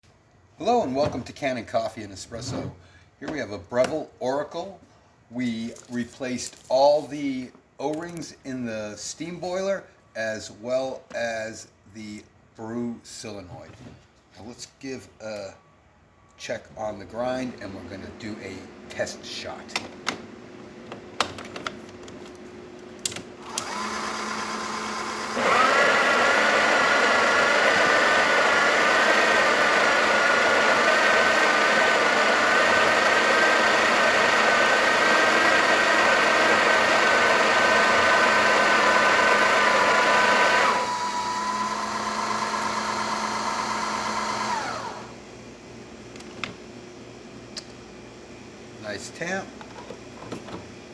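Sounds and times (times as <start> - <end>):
auto-tamp motor running: 23.4 - 45.2
coffee grinder whining: 23.4 - 45.2.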